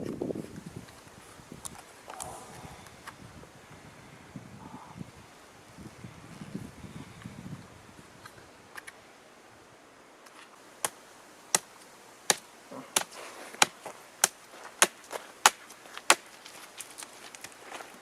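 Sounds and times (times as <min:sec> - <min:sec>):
blade chopping wood: 0:10.8 - 0:11.7, 0:12.3 - 0:16.4.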